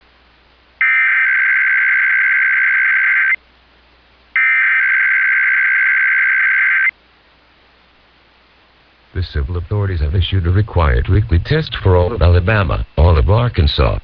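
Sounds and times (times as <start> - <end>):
digital data tone bursts: 0.8 - 3.4, 4.4 - 6.9.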